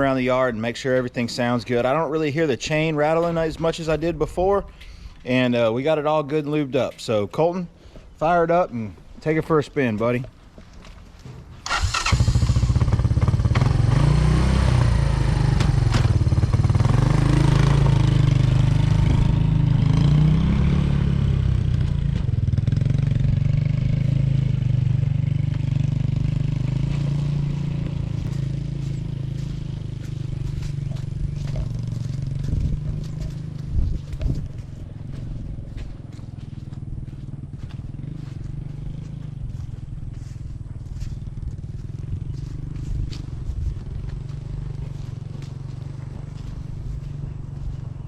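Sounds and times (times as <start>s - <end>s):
quad bike engine running: 11.6s - 48.0s.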